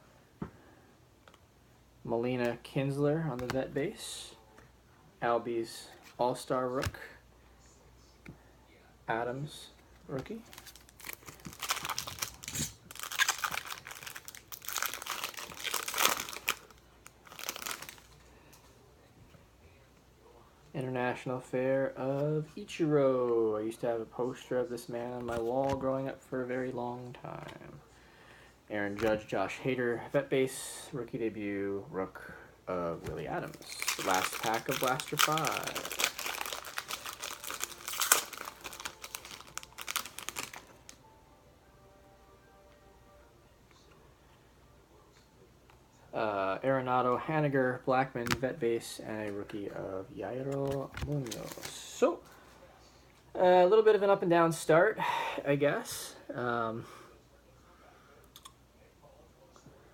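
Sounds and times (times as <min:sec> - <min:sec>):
foil wrapper crinkling: 0:10.4 - 0:18.2, 0:33.3 - 0:41.0.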